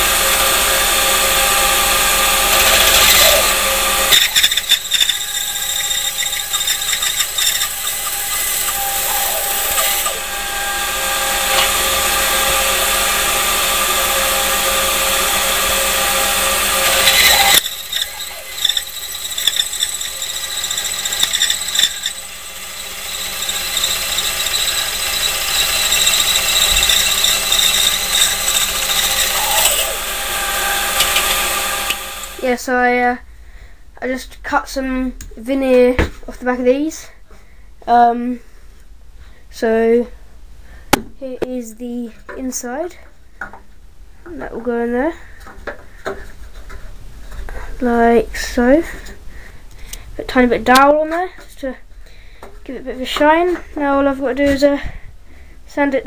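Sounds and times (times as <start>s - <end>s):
bandsaw whining: 0.0s - 32.6s.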